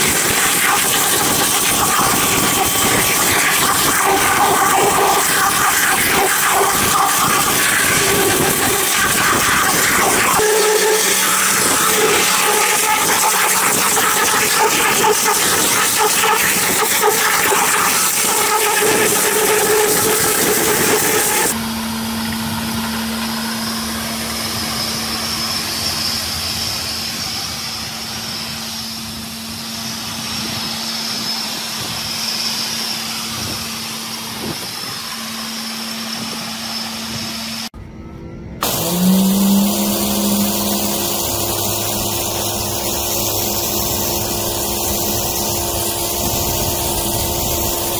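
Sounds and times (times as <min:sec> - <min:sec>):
high-pressure water spray hiss: 0:00.0 - 0:21.6, 0:38.6 - 0:47.9
pressure washer engine: 0:00.0 - 0:37.8, 0:38.6 - 0:47.9.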